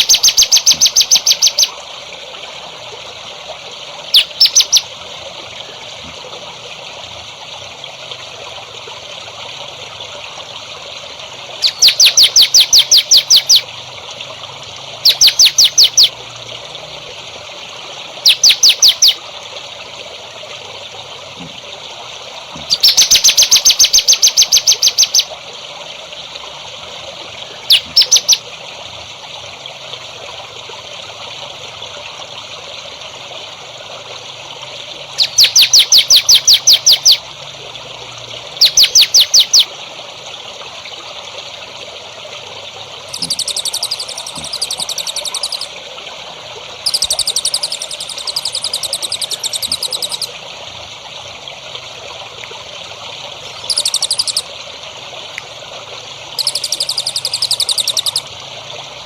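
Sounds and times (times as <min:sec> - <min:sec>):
songbird high chirps: 0:00.0 - 0:01.7, 0:04.1 - 0:04.9, 0:11.6 - 0:13.6, 0:15.0 - 0:16.1, 0:18.2 - 0:19.2, 0:22.7 - 0:25.3, 0:27.7 - 0:28.4, 0:35.2 - 0:37.2, 0:38.6 - 0:39.7, 0:43.1 - 0:45.7, 0:46.8 - 0:50.3, 0:53.7 - 0:54.4, 0:56.4 - 0:58.2
water trickling: 0:00.0 - 0:59.0.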